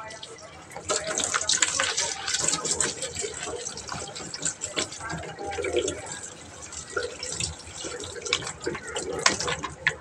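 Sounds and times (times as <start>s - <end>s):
water running from a tap: 0.0s - 10.0s.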